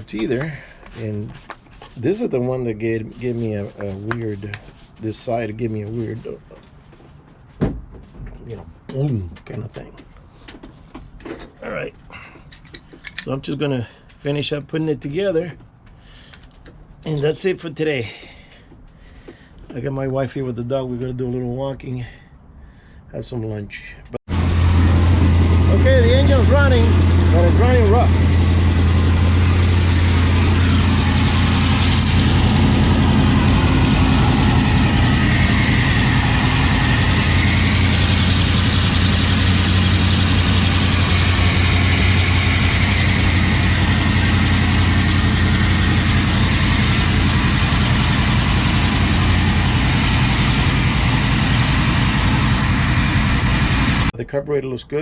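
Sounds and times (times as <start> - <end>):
boat engine idling rough: 24.4 - 54.1.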